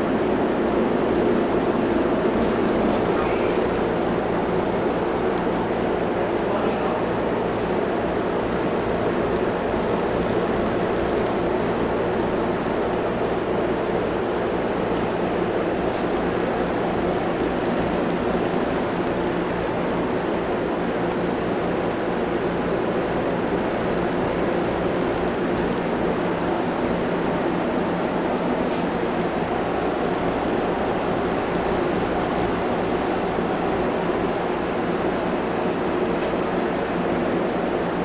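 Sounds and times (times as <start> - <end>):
steady mechanical drone: 0.0 - 38.0.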